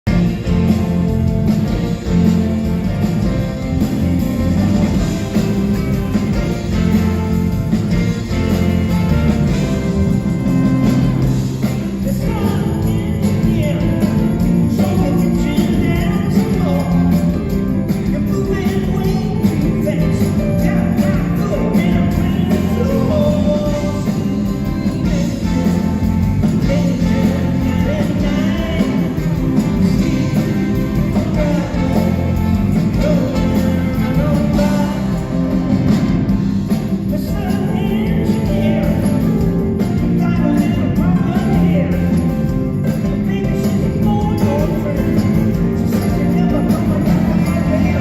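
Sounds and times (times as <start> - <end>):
live rock band playing: 0.0 - 48.0
person singing: 4.3 - 48.0.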